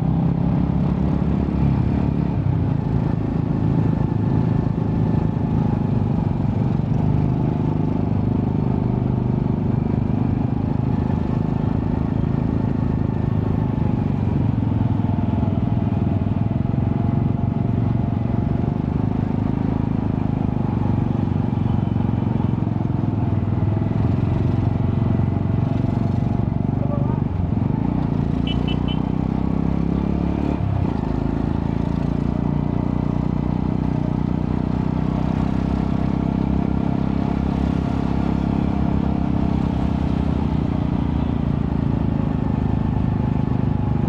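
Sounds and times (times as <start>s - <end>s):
motorcycle engine running: 0.0s - 44.0s.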